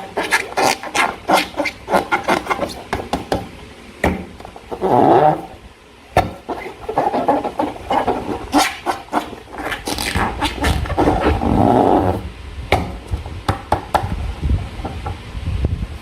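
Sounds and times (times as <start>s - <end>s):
slime squishing: 0.0s - 3.3s, 6.2s - 12.2s.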